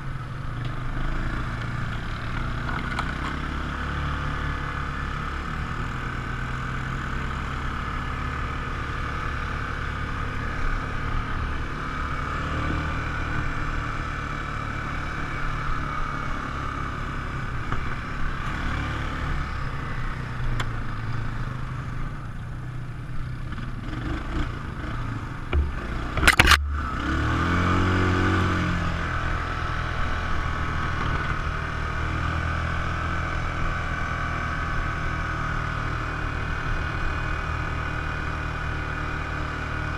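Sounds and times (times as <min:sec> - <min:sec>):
atv engine running: 0:00.0 - 0:39.9
sharp clatter: 0:25.5 - 0:26.8.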